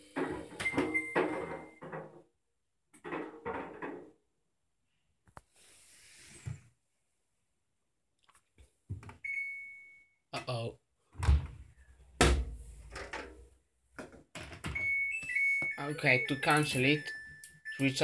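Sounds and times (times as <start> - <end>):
thin high beep: 14.8 - 18.0.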